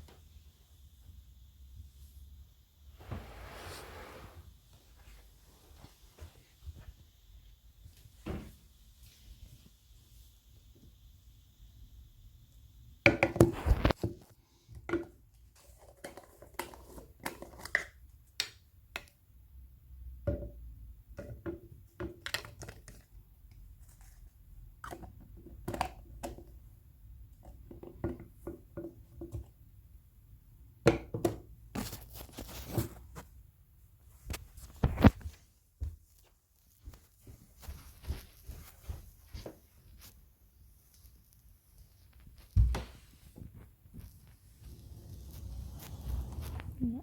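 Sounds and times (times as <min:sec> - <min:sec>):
clicks taps and crinkles: 0:21.2 - 0:26.6.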